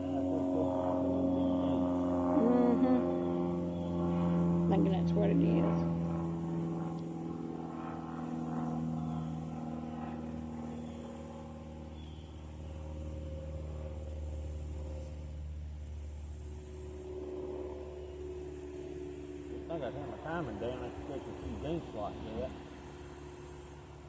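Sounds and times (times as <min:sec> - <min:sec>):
vehicle engine humming: 0:00.0 - 0:24.0.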